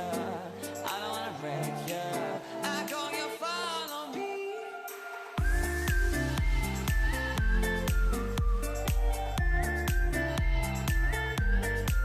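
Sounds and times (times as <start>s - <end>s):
electronic dance music: 0.0s - 12.0s
held synth line: 4.7s - 12.0s
deep kick drum: 5.4s - 12.0s.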